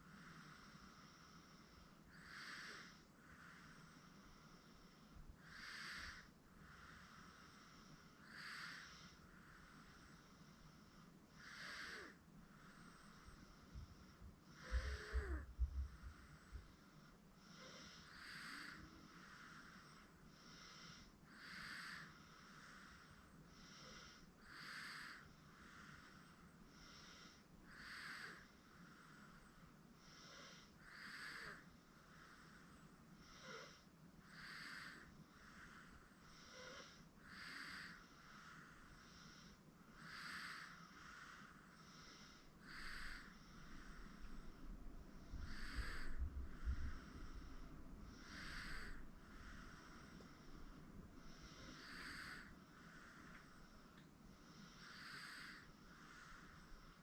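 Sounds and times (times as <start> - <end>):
baby snoring softly: 0.0 - 57.0.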